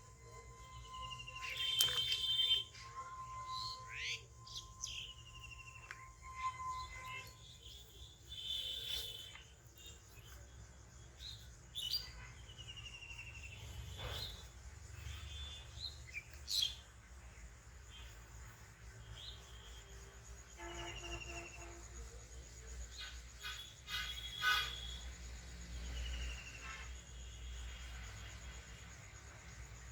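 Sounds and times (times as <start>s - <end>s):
high insect whine: 0.0s - 29.9s
birds chirping and trilling: 0.4s - 18.0s.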